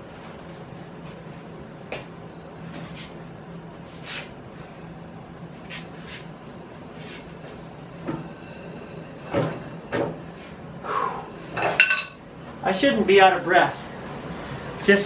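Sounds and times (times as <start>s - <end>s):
steady low hum: 0.0s - 15.0s
person breathing heavily: 10.8s - 11.5s.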